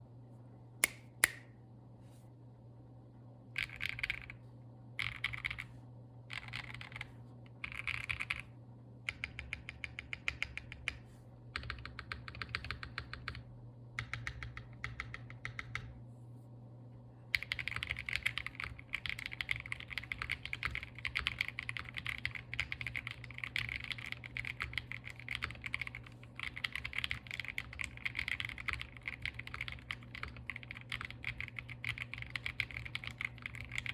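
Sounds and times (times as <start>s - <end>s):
mechanical keyboard typing: 3.6s - 4.4s, 5.0s - 5.7s, 6.3s - 8.5s, 9.1s - 13.4s, 14.0s - 15.9s, 17.3s - 33.9s.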